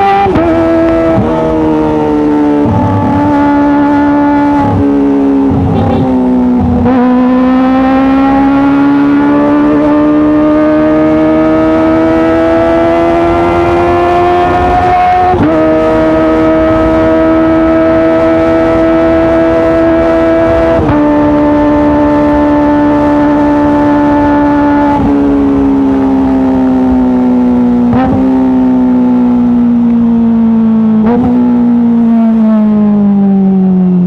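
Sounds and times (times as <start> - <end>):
motorcycle engine at high revs: 0.0 - 34.0.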